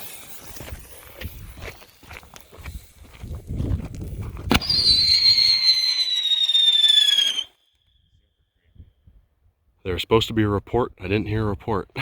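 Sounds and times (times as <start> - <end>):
firework low rumble: 3.3 - 7.5
firework sharp pop: 4.4 - 5.2
firework whistle falling in pitch: 4.5 - 8.0.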